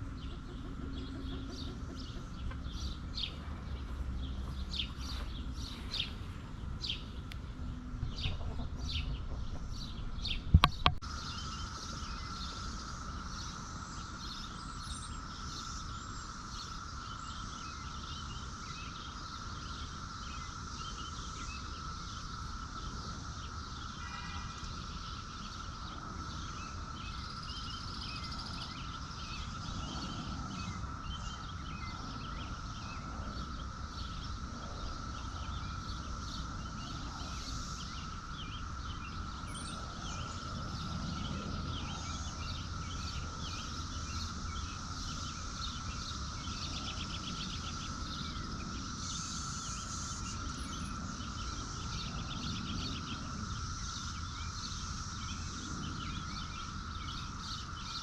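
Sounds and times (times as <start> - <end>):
bird chirps: 0.0 - 58.0.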